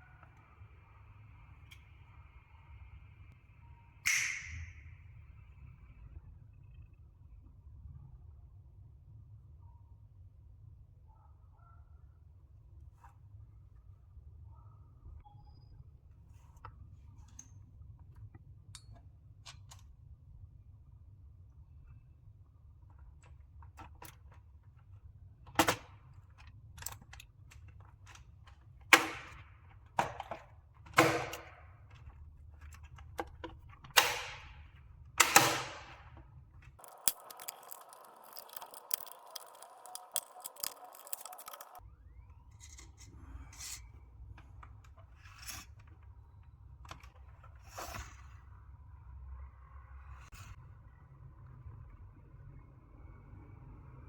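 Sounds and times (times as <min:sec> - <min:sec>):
computer parts clicking and knocking: 0:36.8 - 0:41.8.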